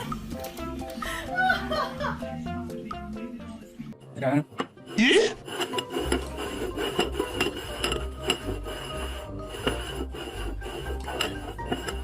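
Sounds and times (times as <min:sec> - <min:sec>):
background music with bass line: 0:00.0 - 0:04.0.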